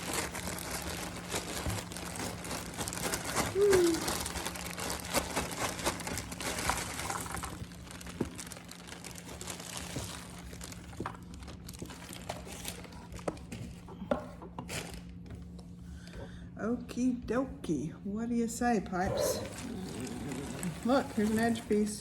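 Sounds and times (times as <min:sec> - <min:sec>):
plastic bag crinkling: 0:00.0 - 0:13.8, 0:19.1 - 0:22.0.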